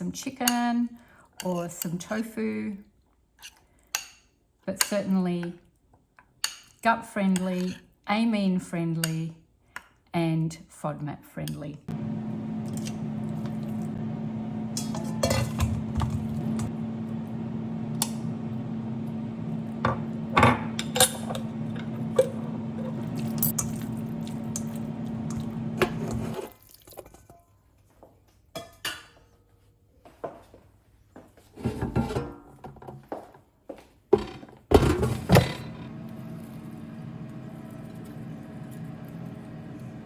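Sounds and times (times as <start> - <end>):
electric motor hum: 11.9 - 26.5, 35.3 - 40.0
dishes and utensils clinking: 14.7 - 16.7, 19.8 - 24.8.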